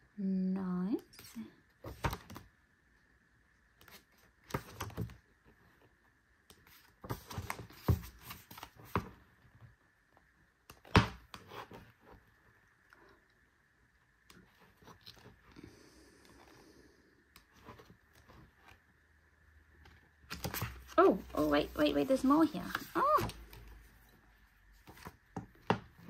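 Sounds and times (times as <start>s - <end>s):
book pages turning: 6.5s - 9.3s, 14.2s - 16.6s, 19.7s - 26.0s.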